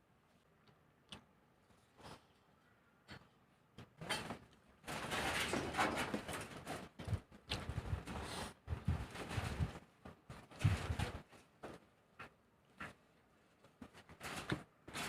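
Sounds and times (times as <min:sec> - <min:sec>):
soft chewing thuds: 0:07.0 - 0:14.7.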